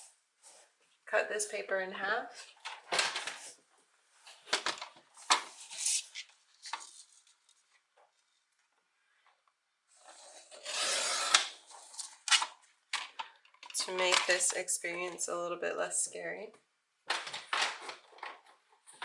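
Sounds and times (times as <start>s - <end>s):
paper crinkling: 4.2s - 8.6s
paper being cut: 10.2s - 11.6s.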